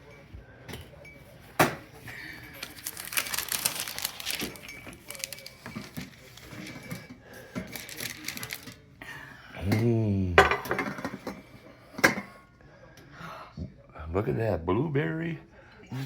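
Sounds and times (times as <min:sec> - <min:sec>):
dishes and cutlery clinking: 0:03.8 - 0:08.8, 0:09.6 - 0:12.5.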